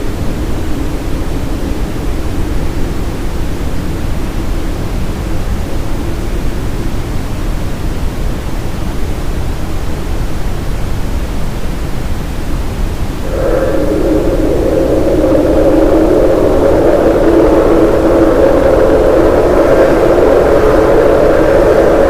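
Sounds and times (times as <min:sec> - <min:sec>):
brown noise hiss: 0:00.0 - 0:22.0
faint low hum: 0:13.2 - 0:22.0.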